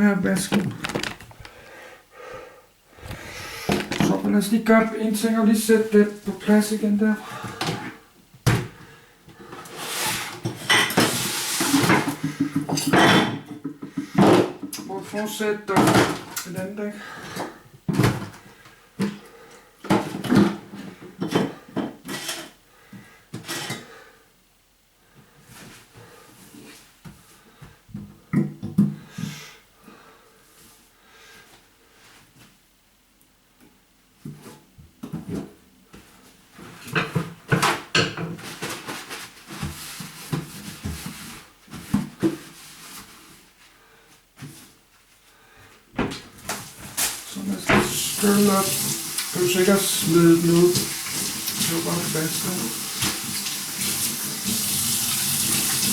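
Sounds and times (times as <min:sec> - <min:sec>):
kitchen items knocking and clattering: 0:00.3 - 0:01.5, 0:03.1 - 0:04.3, 0:10.4 - 0:14.8, 0:15.8 - 0:16.4, 0:46.0 - 0:48.2
household things knocking and rustling: 0:00.3 - 0:01.6, 0:03.0 - 0:04.3, 0:10.3 - 0:14.8, 0:15.8 - 0:16.4, 0:17.2 - 0:19.2, 0:19.8 - 0:22.4, 0:34.2 - 0:43.1.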